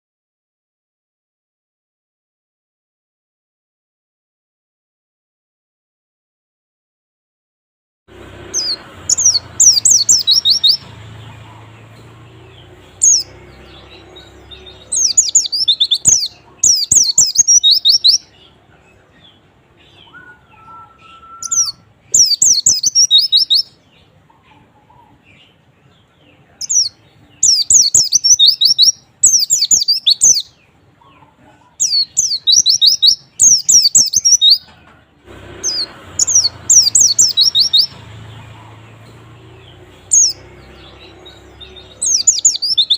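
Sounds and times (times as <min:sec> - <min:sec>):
bird twittering song: 0:08.4 - 0:34.8, 0:35.6 - 0:42.9.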